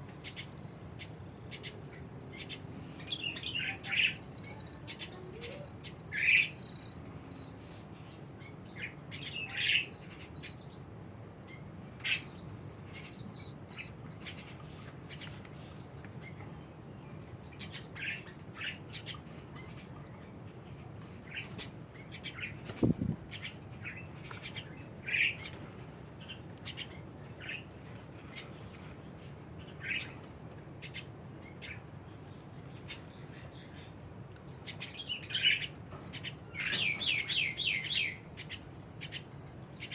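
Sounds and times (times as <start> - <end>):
faint high ticking: 0.0 - 8.4
birds chirping: 0.0 - 39.9.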